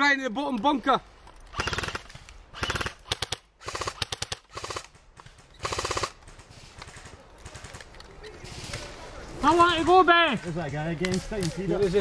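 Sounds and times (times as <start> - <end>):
airsoft rifle firing bursts: 1.6 - 7.9.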